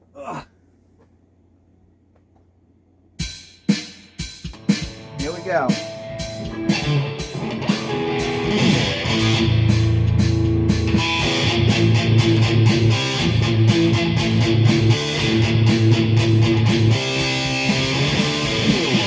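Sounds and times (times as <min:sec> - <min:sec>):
distorted electric guitar: 0:04.6 - 0:19.0.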